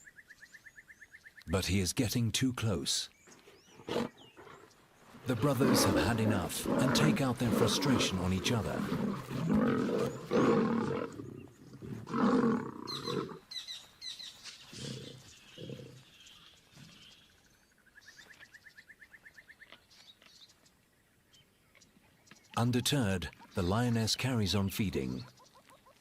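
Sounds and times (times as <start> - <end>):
lions snarling and roaring: 3.4 - 13.5, 14.7 - 16.1
lion growls: 3.7 - 13.4, 14.7 - 16.1.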